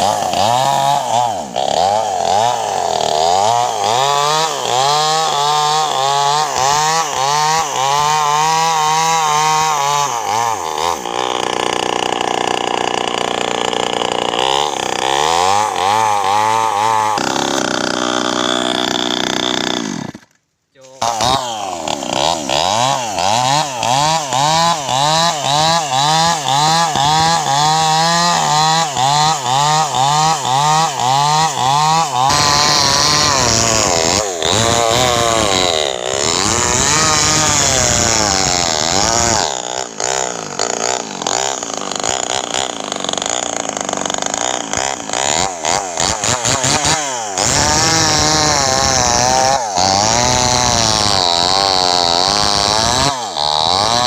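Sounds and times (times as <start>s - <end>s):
chainsaw cutting wood: 0.0s - 54.0s.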